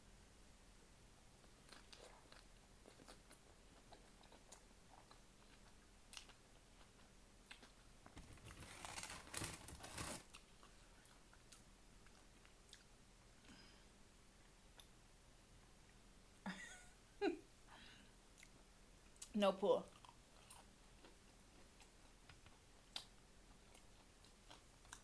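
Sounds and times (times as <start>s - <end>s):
person chewing: 1.4s - 7.9s, 10.0s - 12.9s, 19.9s - 25.0s
crunching and rustling: 8.1s - 10.4s.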